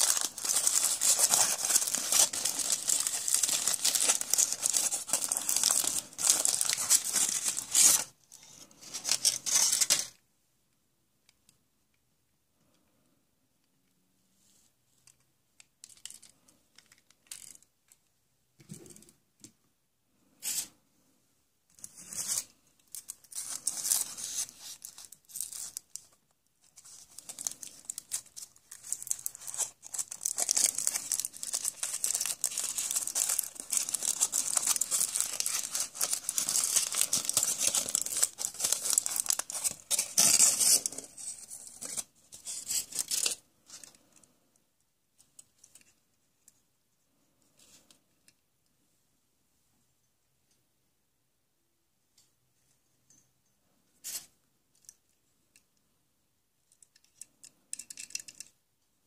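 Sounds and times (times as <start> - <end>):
wrapper crinkling and tearing: 0.0 - 10.2, 21.9 - 43.4.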